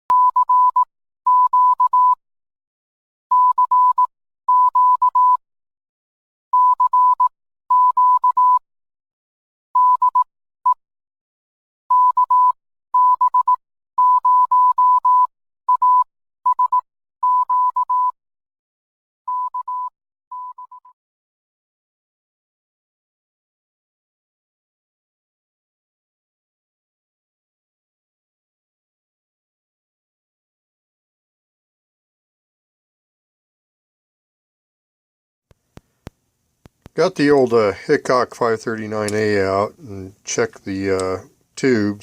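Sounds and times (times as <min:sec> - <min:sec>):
morse code beeps: 0:00.1 - 0:02.2, 0:03.3 - 0:05.4, 0:06.6 - 0:08.6, 0:09.8 - 0:10.3, 0:11.9 - 0:18.2, 0:19.3 - 0:20.9.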